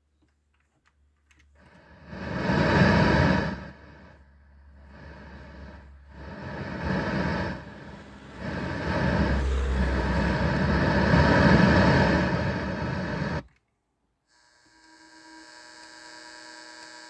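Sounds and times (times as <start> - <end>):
faint steady hum: 1.2 - 13.6.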